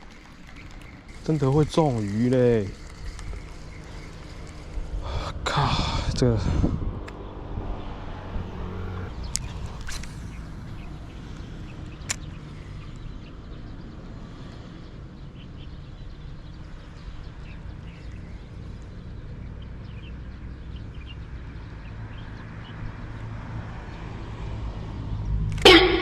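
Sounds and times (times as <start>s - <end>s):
sharp click: 9.3s - 13.0s.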